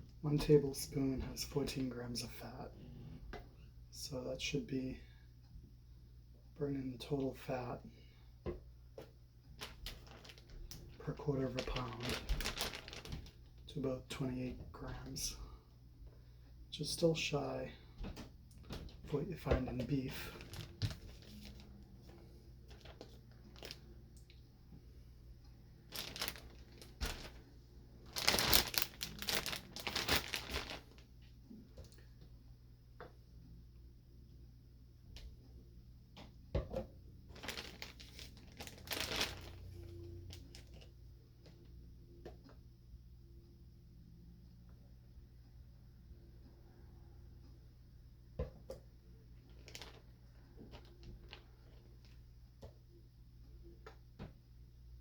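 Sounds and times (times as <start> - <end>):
low steady hum: 0.0 - 55.0
plastic bag crinkling: 9.6 - 13.7, 18.6 - 22.0, 22.7 - 23.9, 25.8 - 31.1, 37.3 - 40.9, 49.5 - 52.2.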